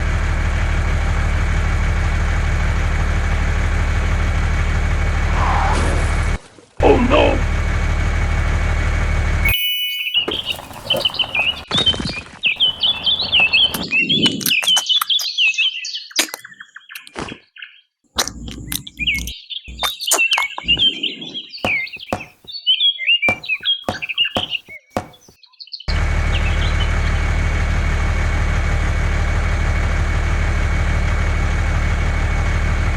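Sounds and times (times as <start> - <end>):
engine-like hum: 0.0 - 9.6, 10.3 - 11.7, 12.6 - 13.8, 25.9 - 32.9
birds chirping: 9.5 - 27.1.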